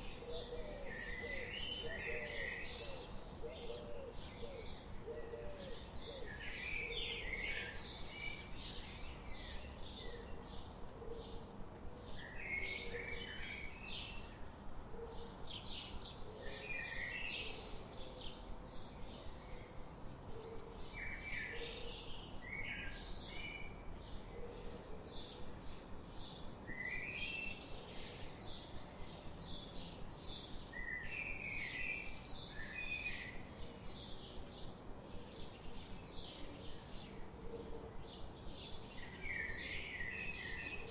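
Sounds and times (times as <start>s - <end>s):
steady background hiss: 0.0s - 40.9s
small birds chirping: 20.5s - 40.9s.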